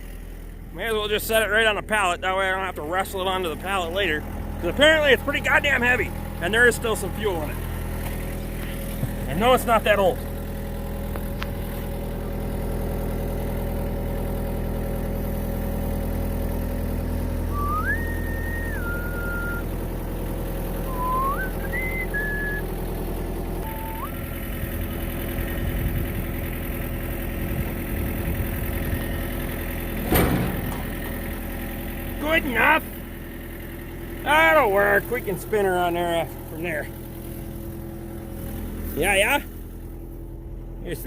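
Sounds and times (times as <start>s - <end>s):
excavator diesel engine running: 0.0s - 41.0s
whistled notes: 17.5s - 19.7s, 20.8s - 22.7s, 23.6s - 24.2s.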